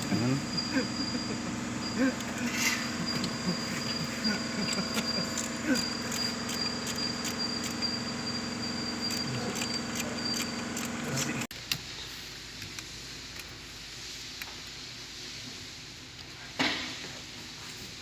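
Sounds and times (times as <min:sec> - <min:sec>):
thin high whine: 0:00.0 - 0:11.5
mechanical hum: 0:00.0 - 0:18.0.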